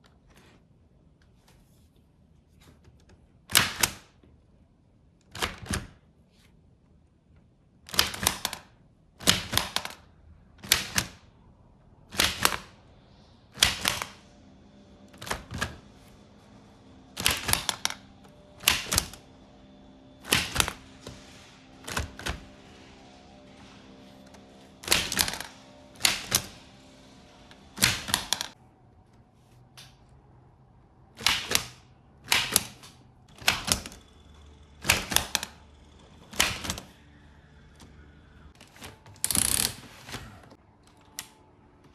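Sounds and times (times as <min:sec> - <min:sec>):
typewriter keys clacking: 0:13.6 - 0:14.2, 0:17.1 - 0:19.3, 0:20.2 - 0:23.8, 0:24.6 - 0:28.5, 0:31.2 - 0:34.1, 0:34.8 - 0:37.0.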